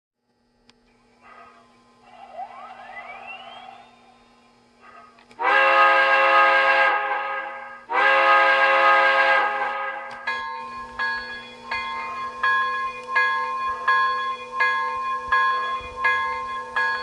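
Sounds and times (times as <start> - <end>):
model locomotive chime whistle: 2.1 - 4.4.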